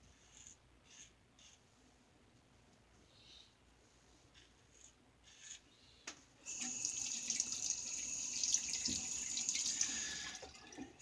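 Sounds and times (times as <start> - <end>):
water running into sink: 6.5 - 11.0.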